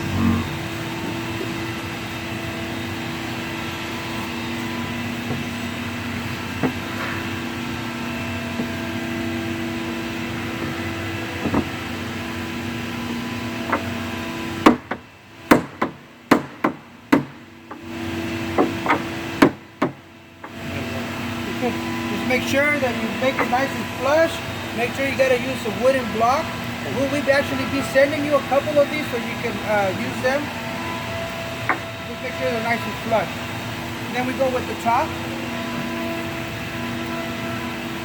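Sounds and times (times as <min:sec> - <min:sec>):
steady background hum: 0:00.0 - 0:38.0
hammer tapping on wood: 0:14.7 - 0:17.8, 0:18.6 - 0:20.6.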